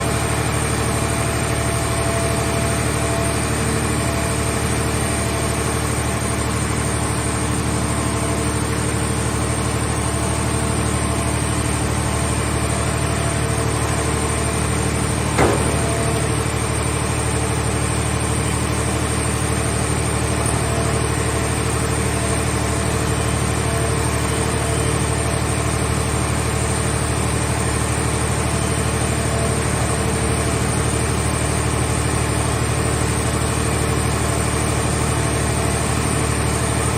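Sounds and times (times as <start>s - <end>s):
baler engine humming: 0.1s - 26.3s
sharp knock: 15.4s - 16.3s.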